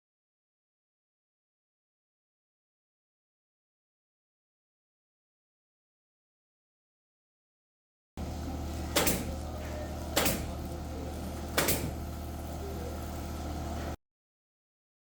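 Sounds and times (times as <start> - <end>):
steady low hum: 8.2 - 14.0
sharp knocks on wood framing: 8.9 - 9.4, 10.2 - 10.6, 11.6 - 12.0.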